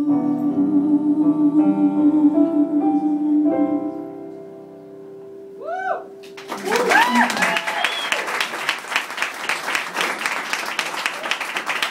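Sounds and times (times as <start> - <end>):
song accompaniment chords: 0.0 - 6.6.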